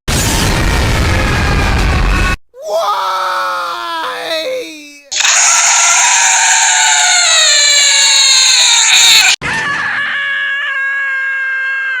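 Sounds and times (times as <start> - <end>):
cartoon character screaming: 2.6 - 12.0.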